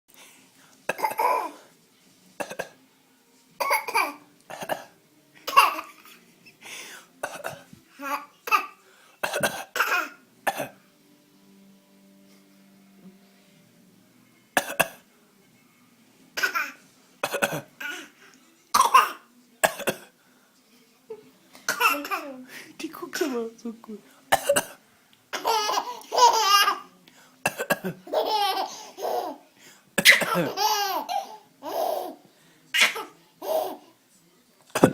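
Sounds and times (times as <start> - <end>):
baby coughing: 0.9 - 1.6, 3.6 - 6.1, 7.2 - 10.8, 16.4 - 18.0, 18.7 - 20.1, 21.7 - 22.3, 24.3 - 26.8, 27.5 - 29.4, 30.0 - 32.2, 32.8 - 33.8
baby laughing: 5.5 - 6.2, 21.7 - 22.4, 25.3 - 26.9, 28.0 - 29.4, 30.0 - 32.2, 32.8 - 33.9.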